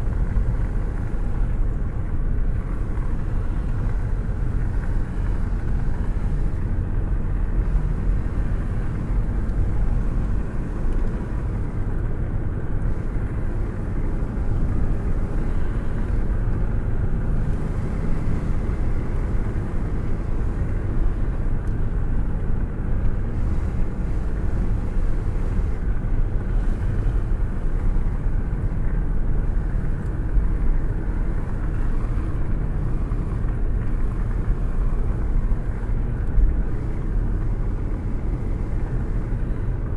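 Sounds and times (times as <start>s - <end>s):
road and wind noise: 0.0s - 39.9s.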